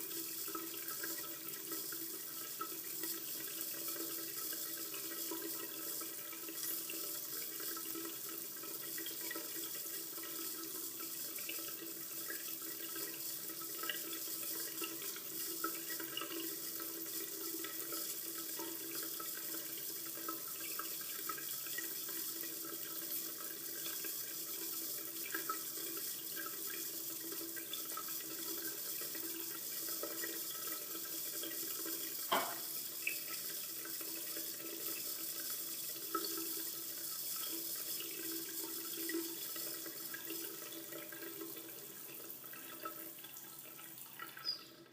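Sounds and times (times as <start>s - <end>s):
faucet water splashing into sink: 0.0s - 44.8s
brief knock: 32.3s - 32.7s.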